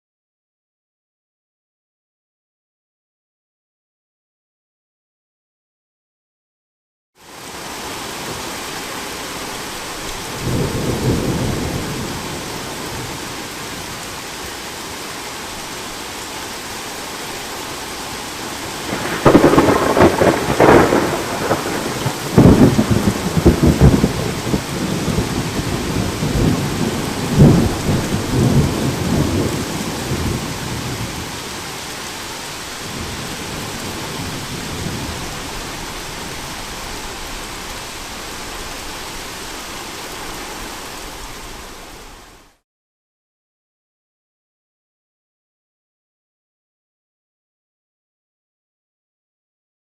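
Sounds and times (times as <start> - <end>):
steady rain: 7.2 - 42.6
thunder rumbling: 10.3 - 13.8, 18.6 - 31.4
loud thunder crack: 18.9 - 31.2.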